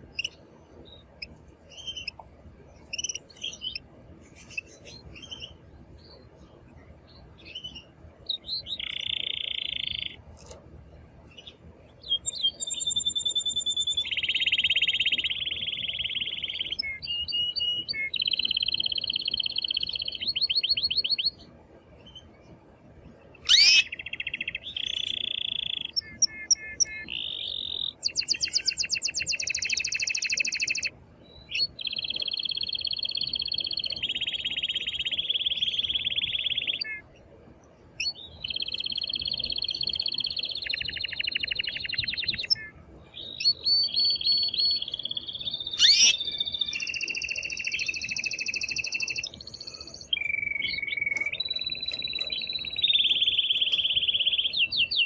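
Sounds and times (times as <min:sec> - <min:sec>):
canary singing trills: 0:00.0 - 0:02.2, 0:02.8 - 0:10.6, 0:11.3 - 0:22.3, 0:23.4 - 0:37.1, 0:38.0 - 0:55.0.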